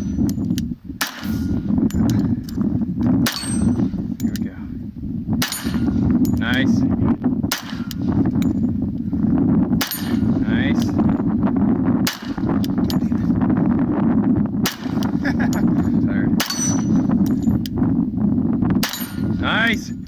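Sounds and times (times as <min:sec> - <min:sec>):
loud gunshots: 0:01.0 - 0:01.5, 0:07.5 - 0:08.0, 0:12.0 - 0:12.6, 0:14.6 - 0:15.2
steel plates ringing: 0:03.3 - 0:04.4, 0:15.7 - 0:17.6.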